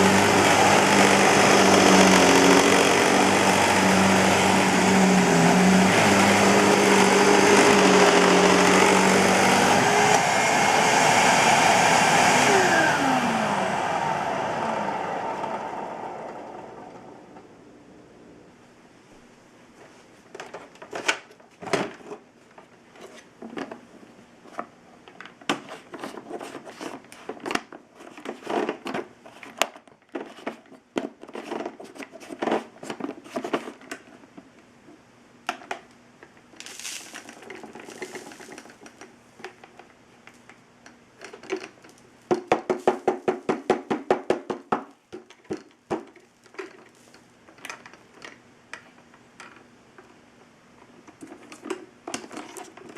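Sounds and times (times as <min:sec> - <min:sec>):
hard objects clattering: 0:36.6 - 0:39.9.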